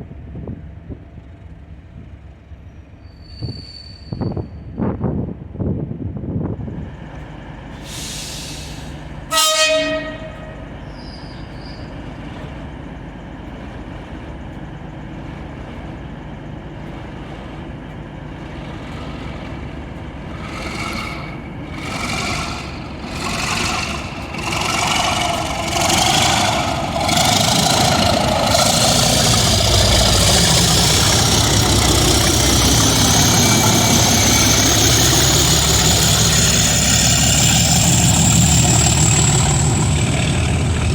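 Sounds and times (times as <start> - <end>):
diesel locomotive engines surging: 0.0 - 40.9
train horn blast: 9.2 - 10.8
turbocharger whine: 18.4 - 40.9.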